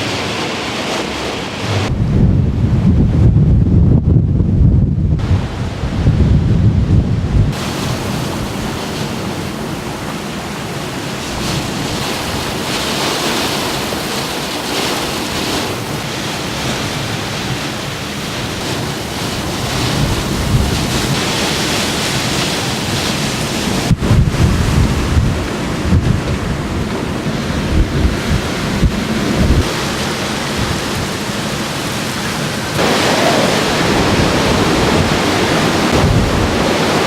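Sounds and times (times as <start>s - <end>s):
rushing wind and water: 0.0s - 37.0s
wind buffeting microphone: 0.2s - 37.0s.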